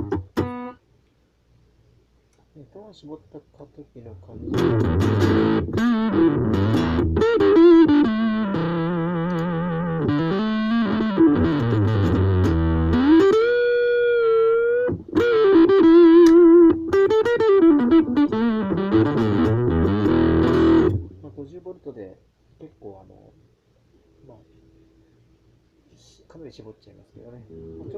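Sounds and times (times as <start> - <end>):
electric guitar lead lines: 0.0 - 0.8, 4.3 - 21.4, 27.5 - 27.9.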